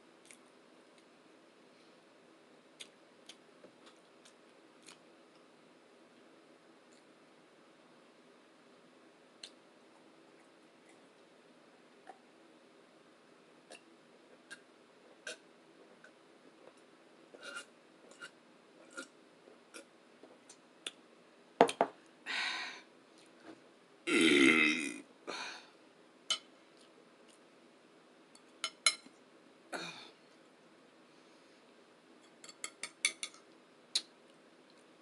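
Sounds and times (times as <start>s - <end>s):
chewing and eating sounds: 2.8s - 5.5s
loud burp: 24.1s - 25.1s.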